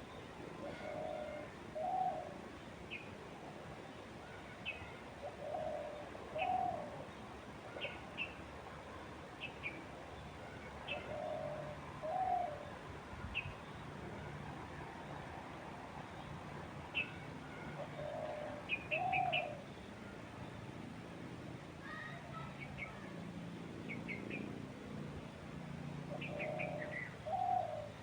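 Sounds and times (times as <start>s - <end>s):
songbird chirps: 0.0s - 28.0s
bird cooing: 0.5s - 3.0s, 4.3s - 8.4s, 10.8s - 12.8s, 17.0s - 19.9s, 26.0s - 28.0s.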